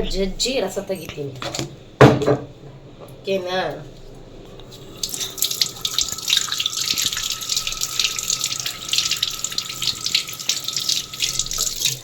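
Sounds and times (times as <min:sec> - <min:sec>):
thin steady high tone: 0:04.7 - 0:12.0
tap water splashing into sink: 0:05.0 - 0:12.0.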